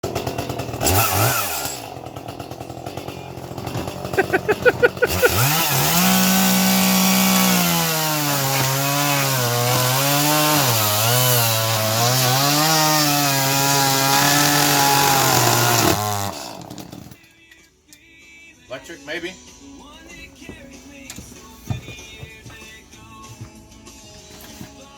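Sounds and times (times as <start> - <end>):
chainsaw engine revving: 0.0 - 17.2.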